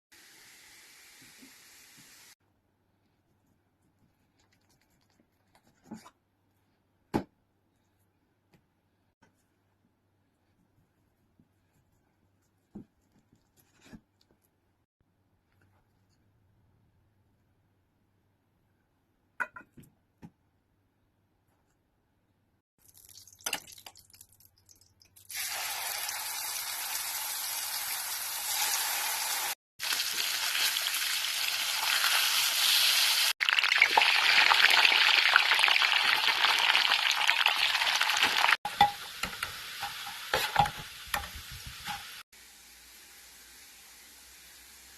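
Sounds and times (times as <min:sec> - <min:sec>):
food sizzling in a pan: 0:00.1 - 0:02.4, 0:25.3 - 0:44.9.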